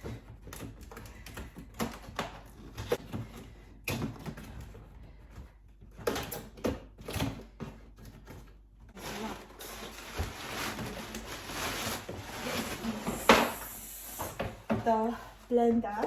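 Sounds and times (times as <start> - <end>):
packaging rustling: 8.9 - 13.8.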